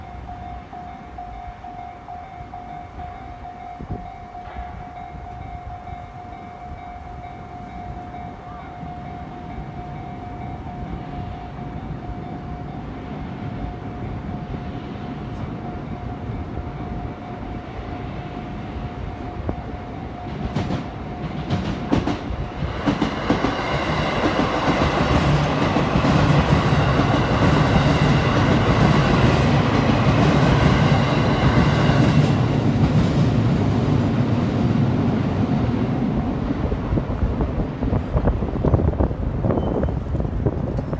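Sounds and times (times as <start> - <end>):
train wheels clattering: 19.4 - 33.6.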